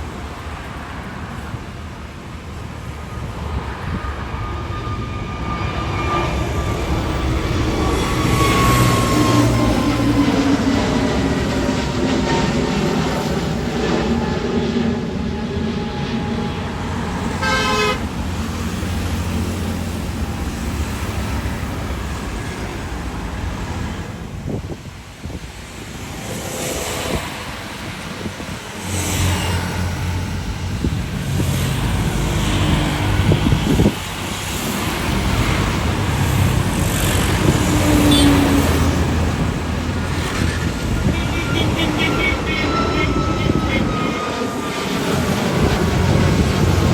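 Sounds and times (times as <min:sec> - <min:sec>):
low rumble of road traffic: 0:00.0 - 0:46.9
vehicle horns honking: 0:17.3 - 0:18.1, 0:38.1 - 0:38.7, 0:40.7 - 0:44.6.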